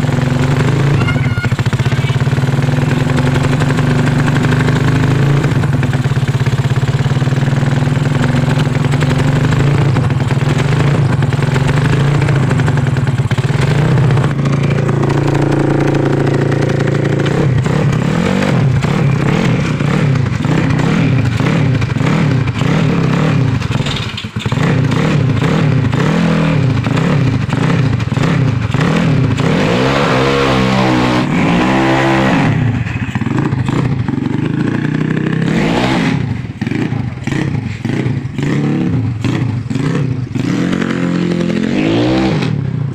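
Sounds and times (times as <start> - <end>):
scooter engine revving: 0.0 - 42.9.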